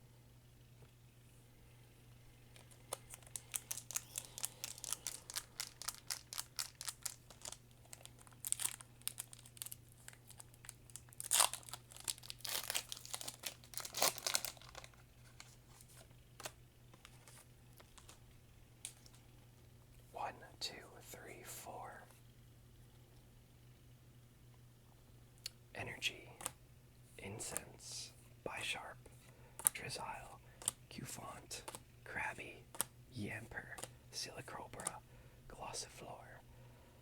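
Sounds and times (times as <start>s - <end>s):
foil wrapper crinkling and tearing: 2.6s - 18.2s.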